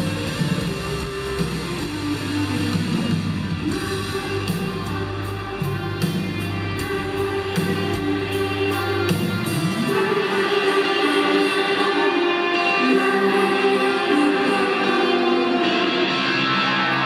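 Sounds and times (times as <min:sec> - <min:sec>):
held bass line: 0:00.0 - 0:10.0
drum and cymbal hits: 0:00.0 - 0:10.2
rock band playing: 0:00.0 - 0:17.0.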